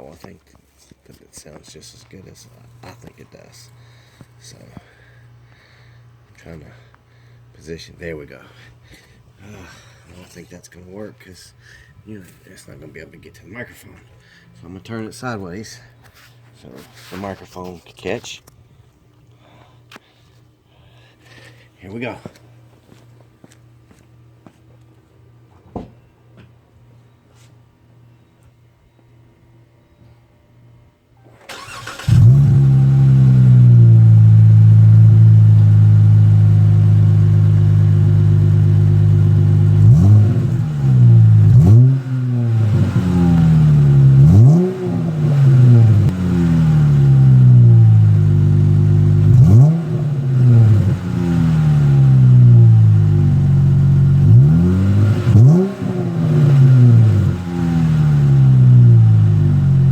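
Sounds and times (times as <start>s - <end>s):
car engine starting and revving: 31.4s - 59.9s.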